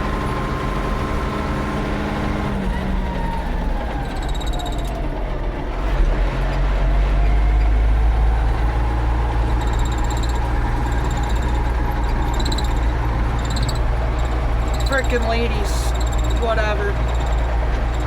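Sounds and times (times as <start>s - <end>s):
tractor diesel engine droning: 0.0s - 18.0s.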